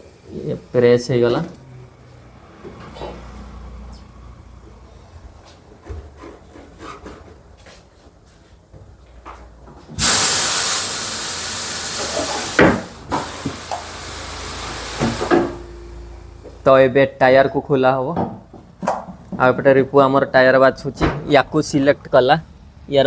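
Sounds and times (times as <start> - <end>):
compressed air hiss: 10.0 - 15.9.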